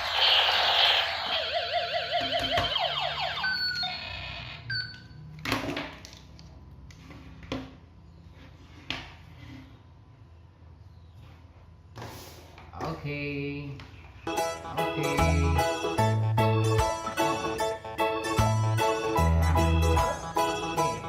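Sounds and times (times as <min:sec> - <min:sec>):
toy gun warbling sweeping tones: 0:00.0 - 0:04.9.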